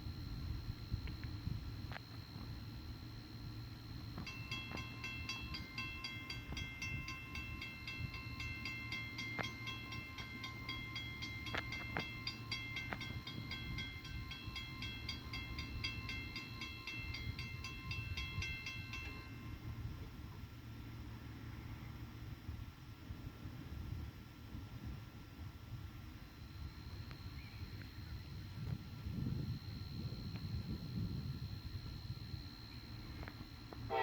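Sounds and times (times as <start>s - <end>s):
steady low rumble: 0.0s - 34.0s
crossing bell ringing: 4.2s - 20.2s.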